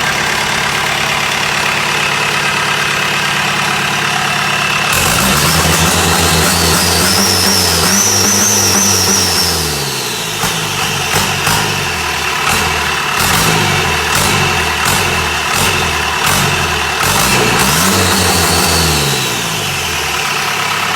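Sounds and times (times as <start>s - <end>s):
diesel boat engine revving: 0.0s - 20.9s
turbo whistle: 5.3s - 11.7s.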